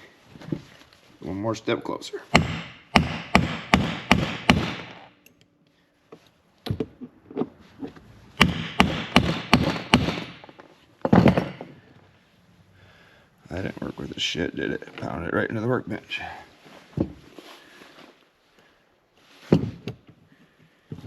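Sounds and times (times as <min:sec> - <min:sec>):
hammer striking chisel: 0:02.3 - 0:05.2, 0:08.4 - 0:11.7.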